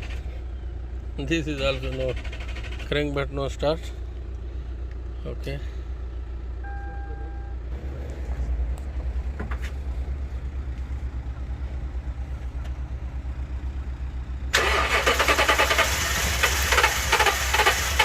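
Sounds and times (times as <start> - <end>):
car engine cranking: 0.0 - 0.5, 1.1 - 5.0, 14.5 - 18.0.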